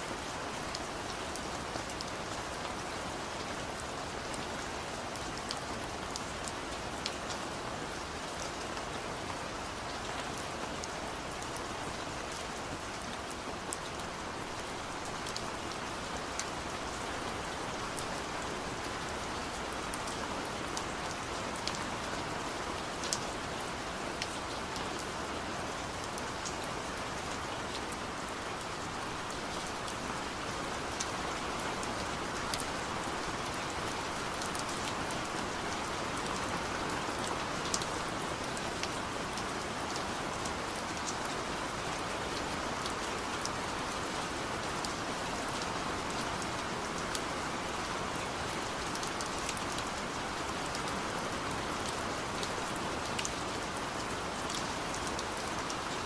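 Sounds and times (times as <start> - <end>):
steady rain hiss: 0.0 - 56.0
raindrops ticking on a surface: 0.1 - 56.0.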